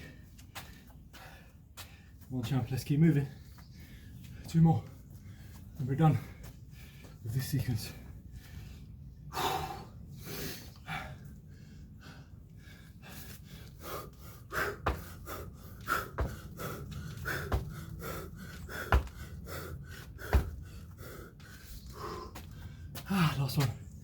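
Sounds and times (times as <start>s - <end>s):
man breathing hard: 0.0s - 2.3s, 3.4s - 7.2s, 8.0s - 23.5s
feet landing with thuds: 14.6s - 19.3s, 20.2s - 20.8s.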